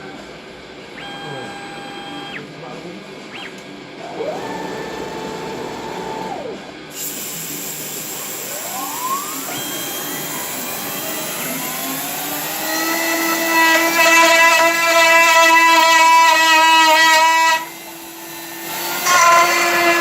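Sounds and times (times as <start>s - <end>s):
steady whine: 0.0s - 14.0s
cnc router motors whining: 0.0s - 20.0s.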